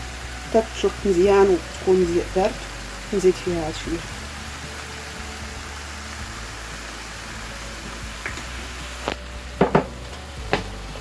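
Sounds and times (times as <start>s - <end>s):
food sizzling in a pot: 0.0s - 11.0s.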